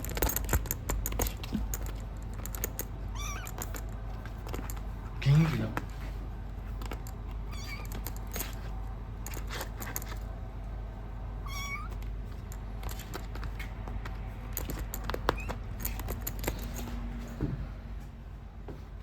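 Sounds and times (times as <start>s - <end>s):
kitten mewing: 3.0s - 3.8s, 7.4s - 8.1s, 11.4s - 12.0s.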